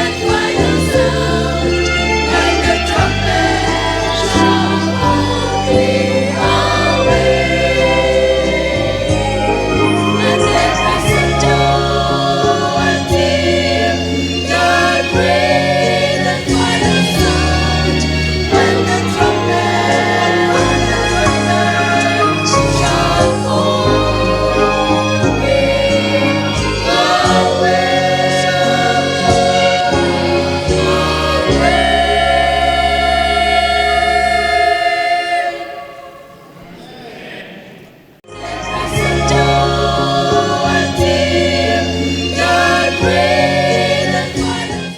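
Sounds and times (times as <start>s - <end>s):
steady bass line: 0.0s - 34.7s
choir singing in harmony: 0.0s - 44.9s.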